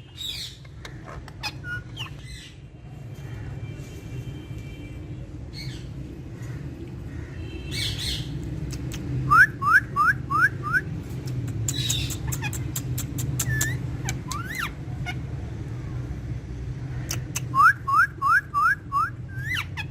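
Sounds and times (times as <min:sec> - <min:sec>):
parrot squawking: 0:00.1 - 0:02.6, 0:11.7 - 0:15.4, 0:17.0 - 0:19.9
parrot whistled chirps: 0:09.3 - 0:10.9, 0:17.5 - 0:19.8.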